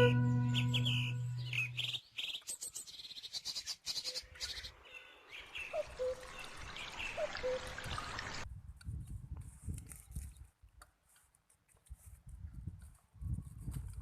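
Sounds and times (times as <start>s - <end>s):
background music: 0.0s - 1.8s.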